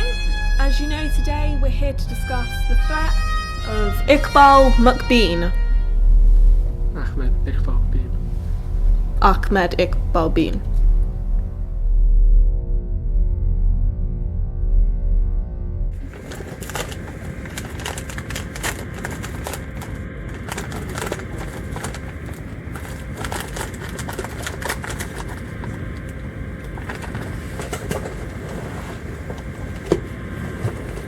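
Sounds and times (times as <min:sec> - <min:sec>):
low rumbling background noise: 0:00.0 - 0:31.0
small clicks and rattles: 0:16.0 - 0:30.0.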